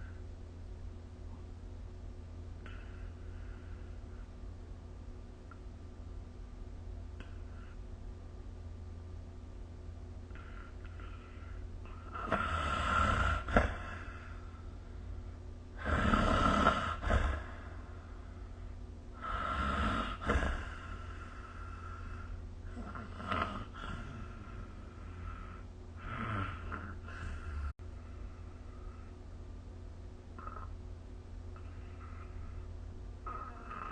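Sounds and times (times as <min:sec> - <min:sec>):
steady low hum: 0:00.0 - 0:33.9
person snoring: 0:10.3 - 0:14.6, 0:15.8 - 0:18.1, 0:19.2 - 0:27.7, 0:30.4 - 0:30.8, 0:33.2 - 0:33.9.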